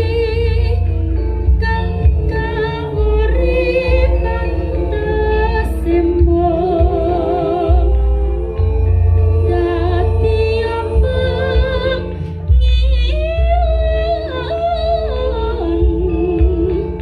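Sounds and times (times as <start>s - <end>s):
singing over heavy bass music: 0.0s - 17.0s.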